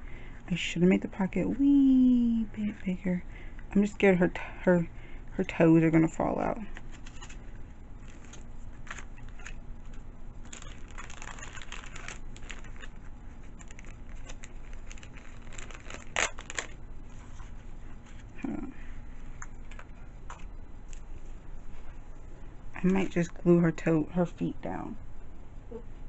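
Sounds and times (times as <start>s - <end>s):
paper rustling and crinkling: 6.7s - 18.4s.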